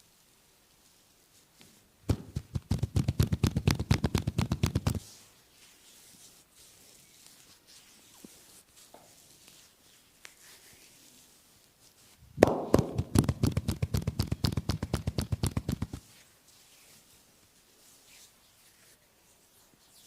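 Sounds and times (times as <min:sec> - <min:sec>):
hands striking back in massage: 0:02.1 - 0:05.0, 0:12.4 - 0:16.0.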